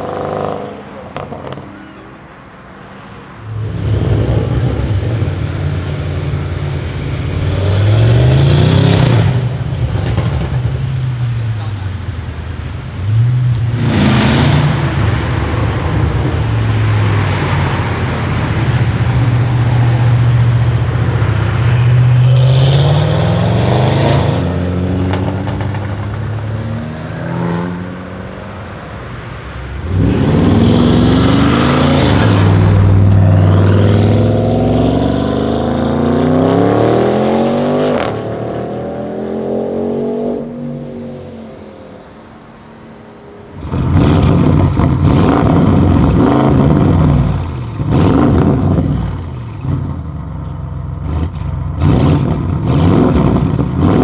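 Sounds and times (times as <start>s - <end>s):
car engine accelerating hard: 3.2s - 54.0s
sharp exhaust crack: 3.3s - 26.2s, 42.0s - 54.0s.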